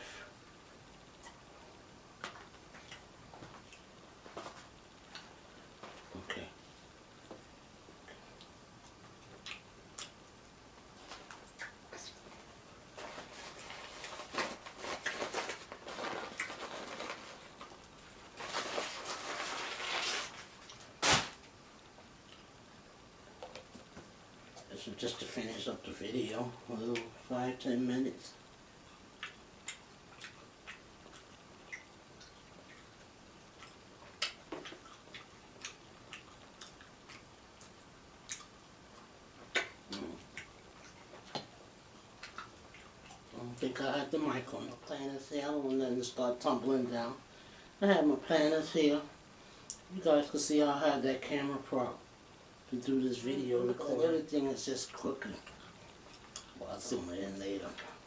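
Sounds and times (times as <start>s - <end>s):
paper packaging crinkling: 13.0s - 21.5s.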